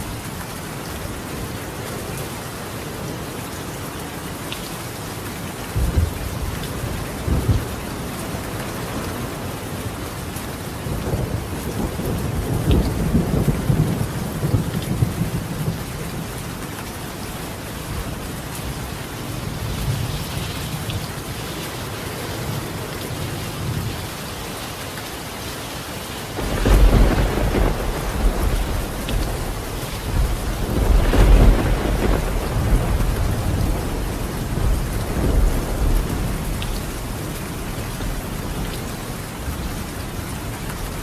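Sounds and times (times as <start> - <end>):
rain on a tiled roof: 0.0 - 41.0
thunder rumbling: 26.3 - 39.7.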